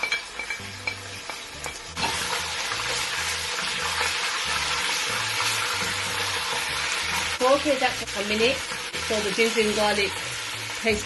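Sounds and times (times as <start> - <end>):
paste sizzling in hot oil: 0.0 - 11.0.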